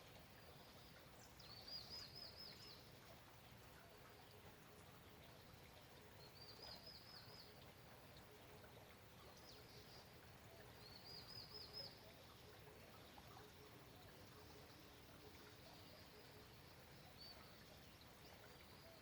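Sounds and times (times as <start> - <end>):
light rain falling: 0.0 - 19.0.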